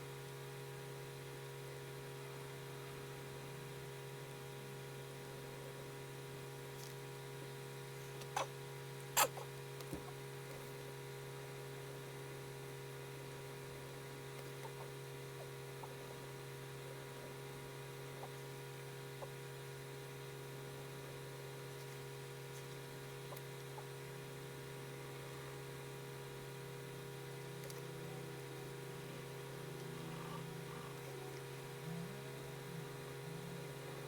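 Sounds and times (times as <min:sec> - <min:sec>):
low electrical hum: 0:00.0 - 0:34.0
faint steady tones: 0:23.0 - 0:34.0.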